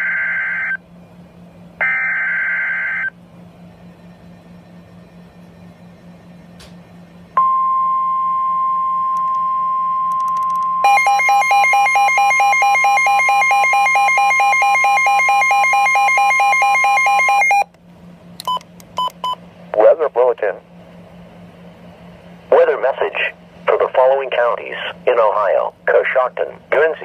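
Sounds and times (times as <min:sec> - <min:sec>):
steady warning alarm tone: 0:00.0 - 0:00.8, 0:01.8 - 0:06.5, 0:07.4 - 0:17.7
fast-alternating alert tone: 0:10.8 - 0:17.6.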